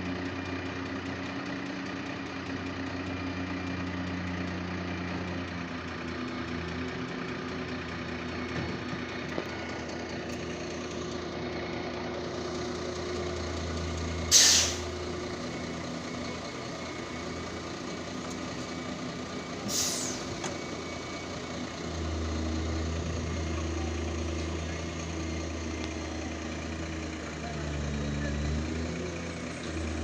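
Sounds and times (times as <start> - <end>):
heavy engine running: 0.0 - 30.0
air-release hisses: 14.3 - 14.9, 19.7 - 20.2.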